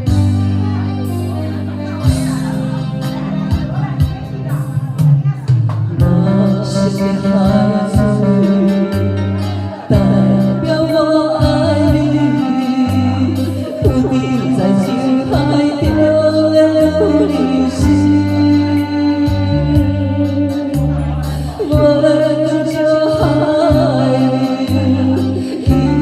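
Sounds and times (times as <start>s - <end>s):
bass line: 0.0s - 26.0s
wavering melody: 6.8s - 19.5s.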